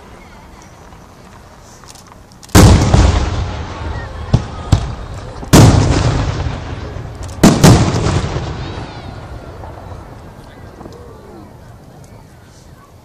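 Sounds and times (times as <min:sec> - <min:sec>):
fireworks sharp cracks: 0:02.2 - 0:10.9
fireworks booming: 0:02.5 - 0:11.7.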